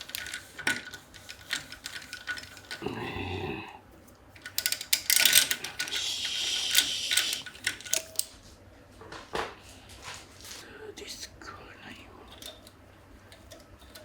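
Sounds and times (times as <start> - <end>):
metal tools clicking and rattling: 0.0 - 2.9, 4.4 - 8.3, 12.2 - 14.0.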